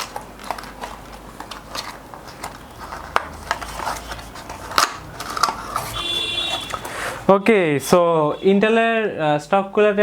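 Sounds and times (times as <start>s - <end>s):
packaging crinkling and rustling: 0.0s - 7.2s.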